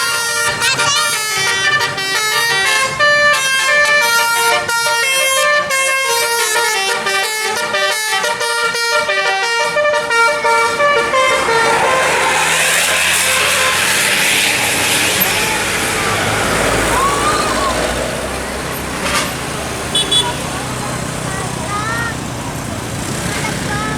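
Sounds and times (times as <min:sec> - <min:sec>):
bus air horns playing a tune: 0:00.0 - 0:20.7
loud rushing noise: 0:10.3 - 0:23.9.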